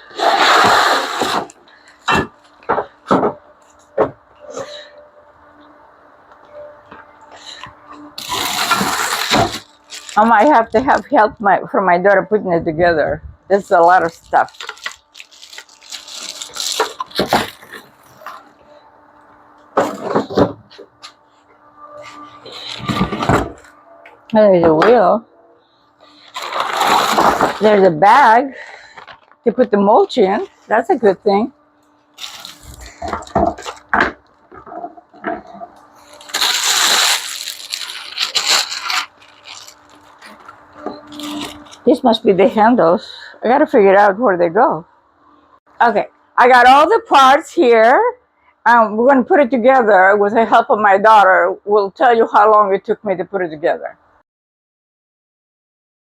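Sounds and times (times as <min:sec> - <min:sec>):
packaging rustling: 0:08.2 - 0:10.7, 0:13.9 - 0:18.5, 0:26.2 - 0:27.7, 0:32.2 - 0:34.4, 0:35.4 - 0:41.9.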